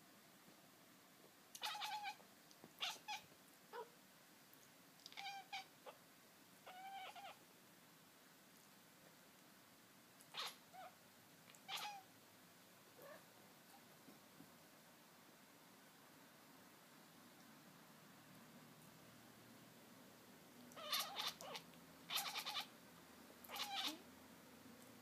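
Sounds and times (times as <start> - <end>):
cat chattering: 1.6 - 2.2, 2.8 - 3.9, 5.0 - 6.0, 6.7 - 7.4, 10.3 - 10.9, 11.5 - 12.0, 20.7 - 22.7, 23.4 - 24.0.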